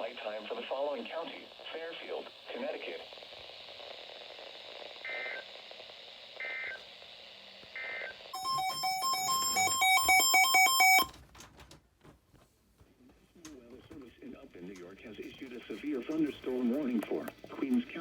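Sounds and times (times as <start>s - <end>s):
radio hiss: 0.0s - 8.3s, 13.6s - 18.0s
fast overlapping beeping tones: 8.4s - 11.1s.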